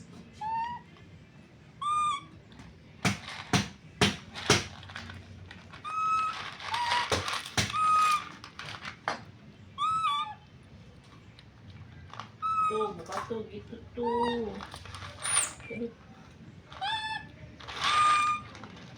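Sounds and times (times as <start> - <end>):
baby monkey squeaking: 0.4 - 0.9, 1.8 - 2.4, 5.8 - 8.3, 9.8 - 10.4, 12.4 - 13.1, 14.0 - 15.8, 16.8 - 17.3, 17.9 - 18.5
brief rustle: 4.4 - 9.1.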